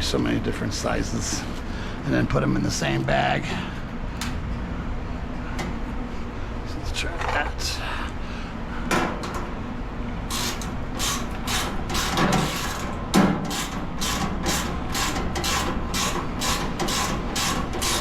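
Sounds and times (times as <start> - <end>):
screw rasping into sheet metal: 10.3 - 18.0.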